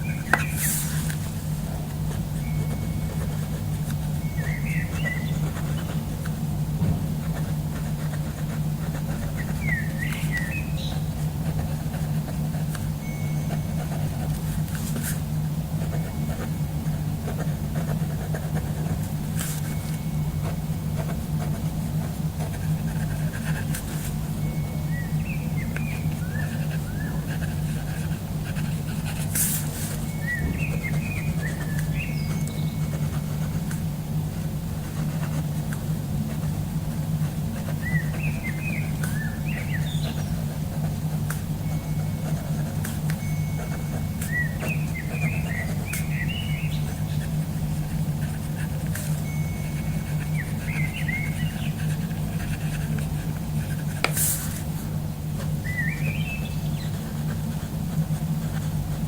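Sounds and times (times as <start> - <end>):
birds chirping: 0.0 - 6.9, 9.1 - 14.2, 21.9 - 34.2, 37.6 - 40.8, 41.5 - 57.5
steady low hum: 0.0 - 59.0.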